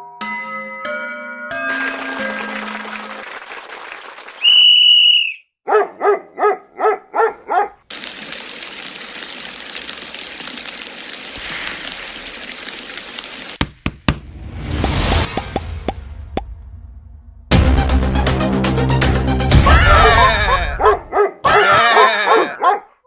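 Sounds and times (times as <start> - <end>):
whistle blast: 4.4 - 5.5
cartoon dog yaps: 5.7 - 7.7, 19.6 - 23.0
rushing hiss: 7.9 - 14.8.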